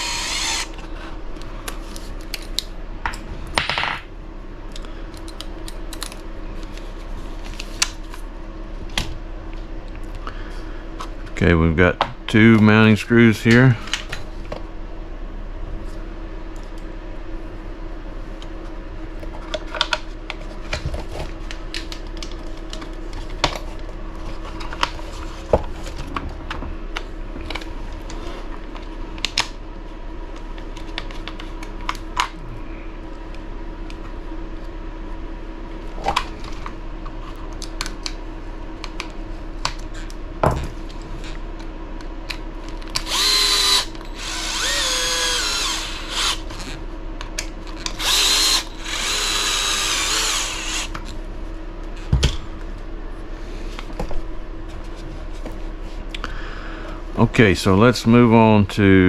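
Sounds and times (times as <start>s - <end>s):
electric driver whirring: 0.0s - 0.8s, 42.9s - 46.8s, 47.6s - 51.2s
steady low hum: 0.0s - 59.0s.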